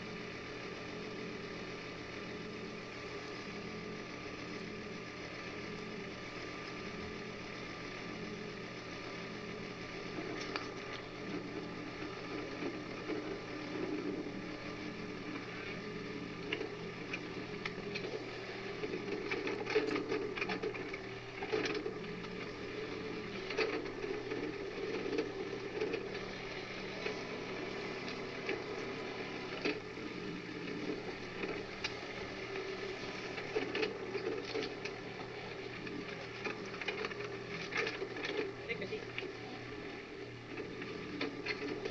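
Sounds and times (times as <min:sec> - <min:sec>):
excavator diesel engine running: 0:10.0 - 0:39.8.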